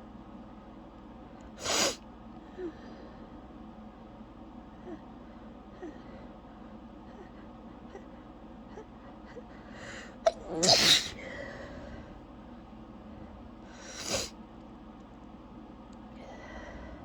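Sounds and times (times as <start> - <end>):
woman sneezing: 10.3 - 11.2
woman breathing in: 11.1 - 12.2, 16.2 - 17.0.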